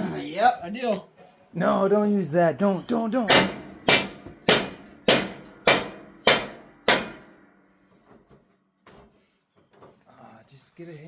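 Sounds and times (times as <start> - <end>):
hammer ringing on metal rim: 3.3 - 7.4.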